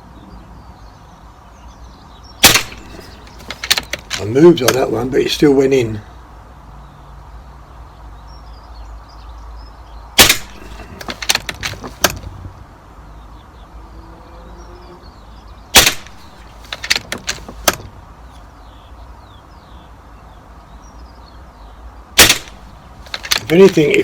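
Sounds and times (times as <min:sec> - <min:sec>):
rifle action clicks: 0:02.4 - 0:04.8, 0:10.2 - 0:12.3, 0:15.8 - 0:17.8, 0:22.2 - 0:24.0
air rifle shots: 0:02.4 - 0:04.9, 0:10.2 - 0:12.4, 0:15.8 - 0:17.9, 0:22.2 - 0:24.0.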